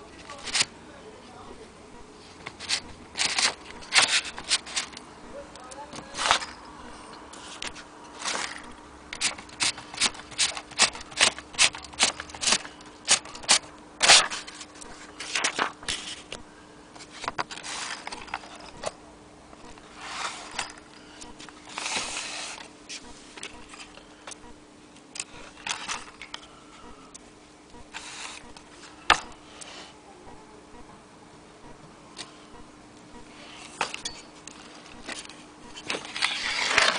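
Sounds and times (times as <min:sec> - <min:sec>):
typewriter scraping: 0:02.4 - 0:05.0, 0:07.3 - 0:16.4, 0:21.7 - 0:22.7, 0:33.5 - 0:36.9
typewriter keys clacking: 0:09.2 - 0:14.2.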